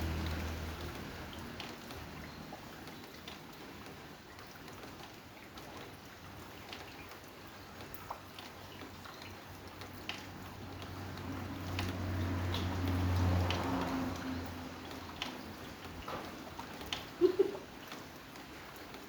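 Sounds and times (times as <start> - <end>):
drips and taps: 0.0 - 19.0
rain falling: 0.0 - 19.0.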